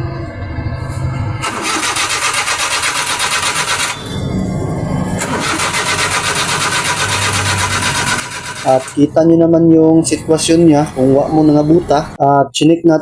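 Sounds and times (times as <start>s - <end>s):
engine cranking on starter: 1.4s - 4.2s, 5.2s - 9.1s.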